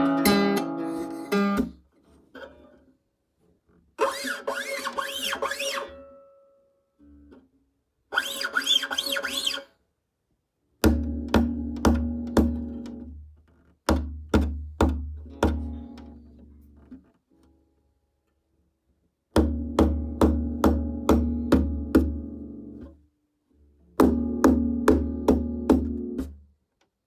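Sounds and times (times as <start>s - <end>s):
guitar strings scraped by fingers: 0.0s - 2.7s, 4.0s - 6.2s, 8.1s - 9.7s
knocks on wooden guitar body: 10.8s - 12.8s, 13.9s - 15.8s, 19.4s - 22.2s, 24.0s - 26.3s.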